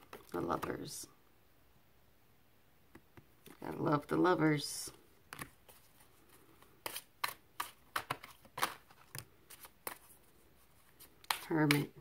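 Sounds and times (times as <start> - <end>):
cards shuffling and snapping: 6.6 - 10.2.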